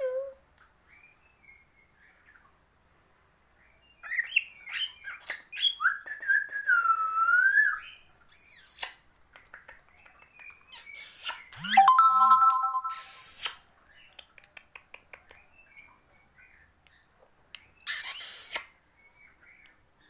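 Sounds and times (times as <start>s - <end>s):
cockatiel whistling and chirping: 17.9s - 18.6s.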